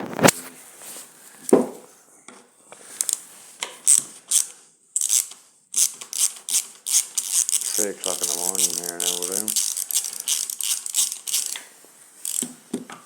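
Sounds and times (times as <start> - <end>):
ratchet wrench clicking: 3.8 - 11.6, 12.2 - 12.4.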